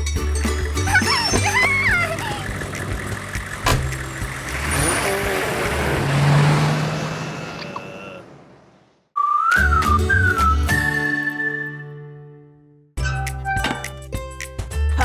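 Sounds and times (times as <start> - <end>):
rushing vehicle engine: 0.0 - 9.1.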